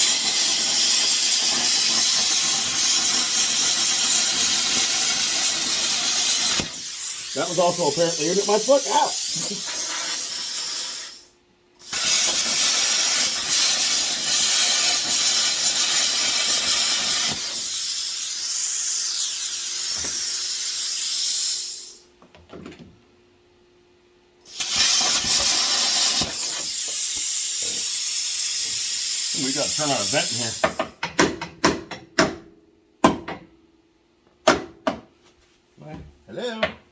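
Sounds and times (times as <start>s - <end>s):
arc welder sputtering and hissing: 0.0s - 22.1s, 24.4s - 31.0s.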